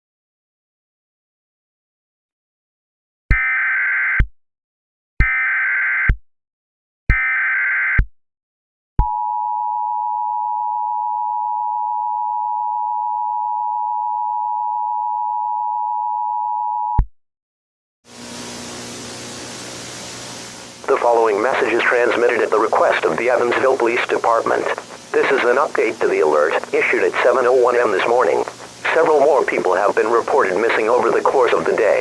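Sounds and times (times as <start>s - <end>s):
static hiss: 18.1s - 32.0s.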